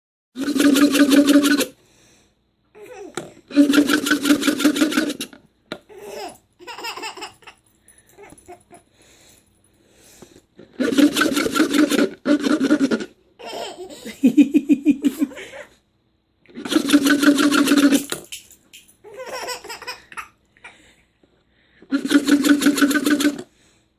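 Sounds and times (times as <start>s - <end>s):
child laughing: 5.9s - 7.6s, 13.4s - 15.8s, 19.0s - 20.4s.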